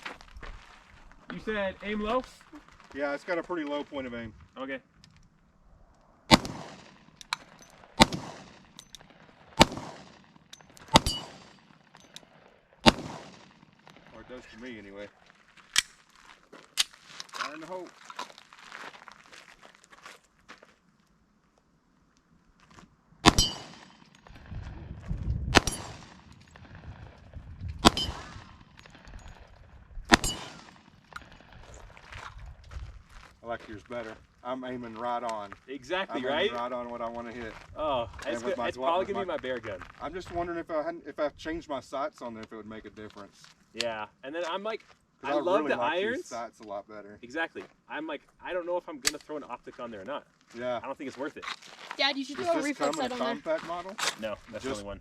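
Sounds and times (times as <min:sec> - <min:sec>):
pistol shots with echo: 0:06.3 - 0:07.1, 0:08.0 - 0:08.8, 0:09.6 - 0:11.7, 0:12.8 - 0:13.6, 0:23.2 - 0:24.1, 0:25.5 - 0:26.4, 0:27.8 - 0:28.9, 0:30.1 - 0:31.0.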